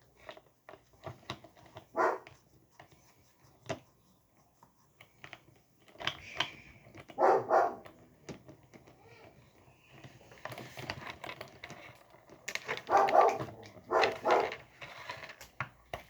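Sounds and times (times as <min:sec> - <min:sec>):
dog barking: 0:01.9 - 0:02.3, 0:07.2 - 0:07.9, 0:12.8 - 0:14.6.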